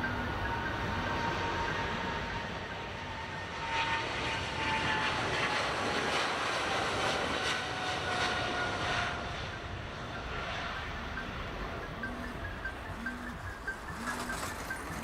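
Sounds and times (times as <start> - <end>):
engine whine falling in pitch: 0.0 - 5.7
jet engines roaring: 0.0 - 15.0.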